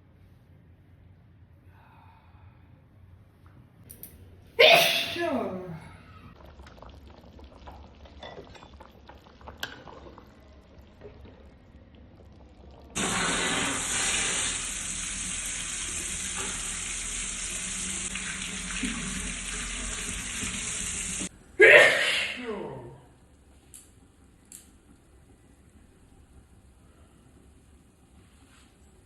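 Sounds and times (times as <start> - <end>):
running water rushing: 13.0 - 21.3
faint small clicks: 23.7 - 24.8.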